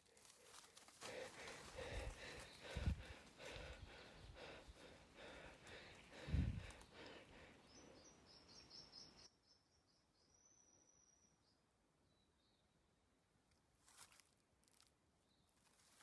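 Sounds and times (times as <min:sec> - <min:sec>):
faint high-pitched chirping: 0:07.6 - 0:12.8.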